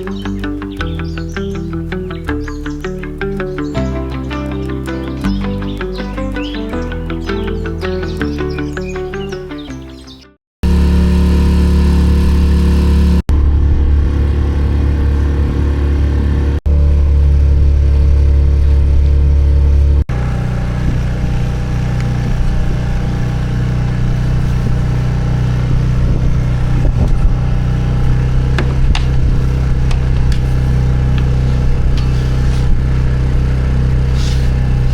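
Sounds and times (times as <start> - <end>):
outboard motor running: 10.6 - 34.9.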